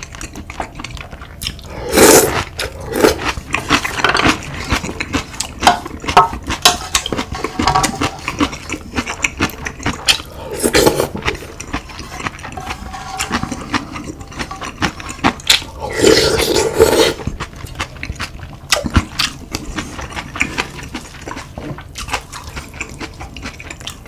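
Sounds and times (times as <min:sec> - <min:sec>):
chewing with wet clicks: 0:00.0 - 0:01.7, 0:08.3 - 0:10.3, 0:17.3 - 0:24.0.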